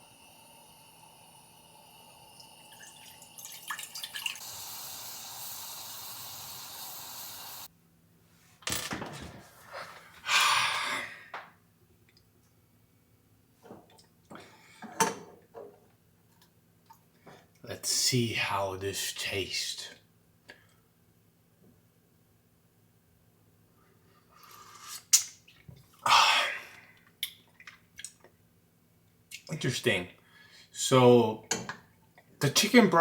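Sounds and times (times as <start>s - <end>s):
liquid pouring: 2.3s - 7.7s.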